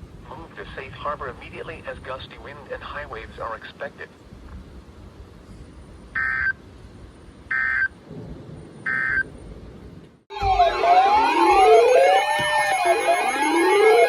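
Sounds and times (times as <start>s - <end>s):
siren tones sweeping up and down: 8.8s - 9.3s, 10.3s - 14.0s.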